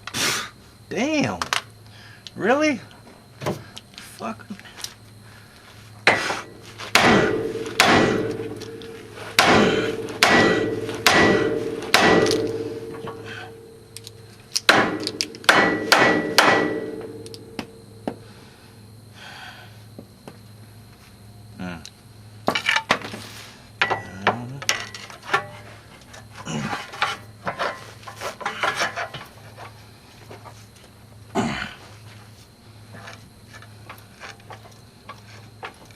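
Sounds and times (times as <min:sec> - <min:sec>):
low steady hum: 0:00.0 - 0:35.9
hammer striking metal: 0:06.1 - 0:13.8, 0:14.7 - 0:17.6
metal tools clinking and scraping: 0:24.7 - 0:29.8.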